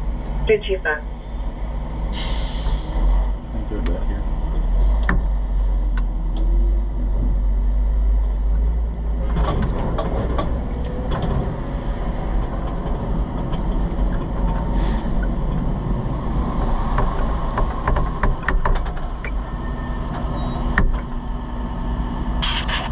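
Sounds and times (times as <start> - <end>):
fire truck engine rumble: 0.0 - 22.9
rattles and clicks: 16.9 - 19.4.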